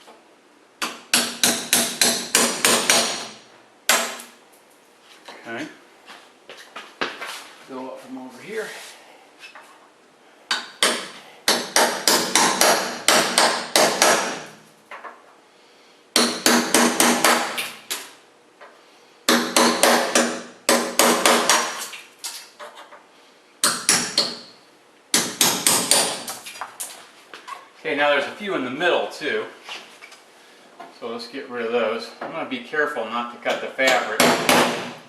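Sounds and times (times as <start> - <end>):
hammer striking chisel on metal: 0.8 - 4.3, 10.5 - 14.5, 19.3 - 21.8, 23.6 - 24.5, 25.1 - 26.3.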